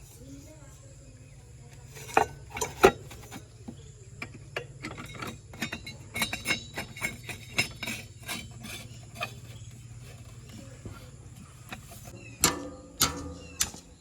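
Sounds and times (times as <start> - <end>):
diesel engine running: 0.0 - 12.4
sharp metal knocks and clinks: 4.1 - 14.0.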